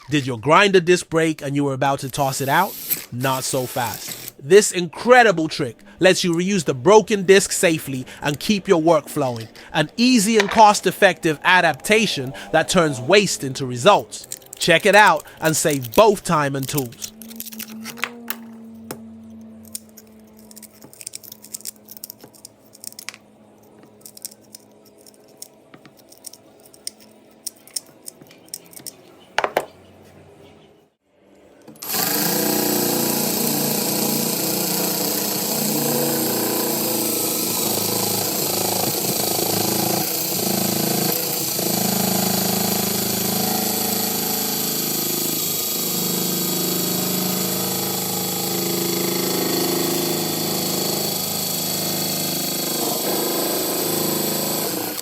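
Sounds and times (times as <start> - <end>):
handling clicks and knocks: 14.2 - 29.8
angle grinder running: 31.8 - 55.0.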